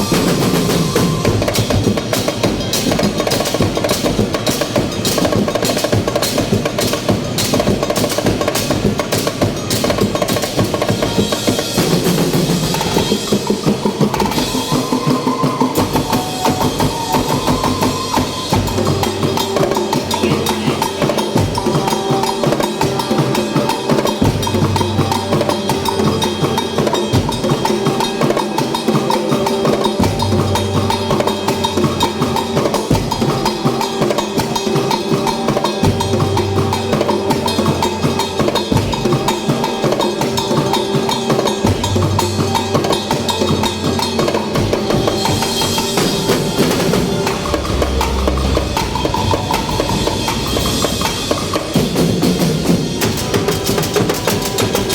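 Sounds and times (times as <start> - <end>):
held pitched tones: 0.0 - 54.9
deep bass swell: 45.4 - 51.8.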